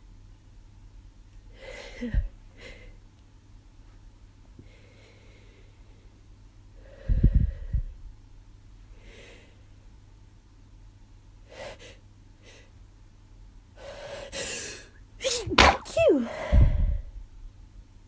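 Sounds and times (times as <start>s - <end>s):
faint breaths: 4.6s - 8.0s, 8.9s - 9.8s, 16.2s - 17.2s
person sneezing: 15.2s - 16.4s.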